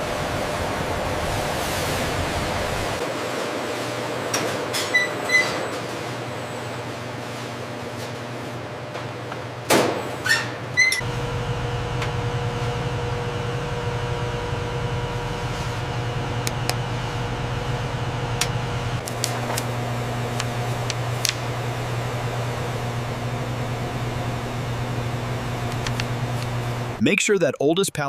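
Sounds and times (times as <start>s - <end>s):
machinery humming: 0.0s - 27.1s.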